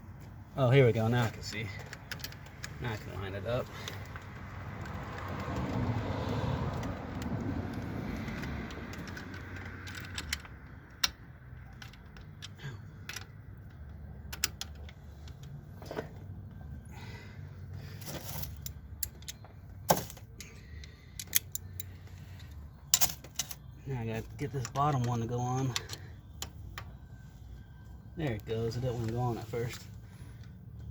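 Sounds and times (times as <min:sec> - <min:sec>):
metallic clicks of socket and nut: 0:06.8 - 0:15.6, 0:20.8 - 0:23.7.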